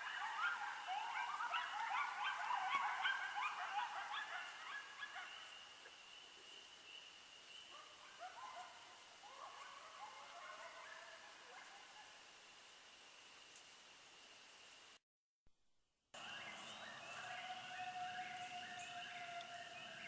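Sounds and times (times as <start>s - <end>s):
geese honking: 16.2s - 20.0s.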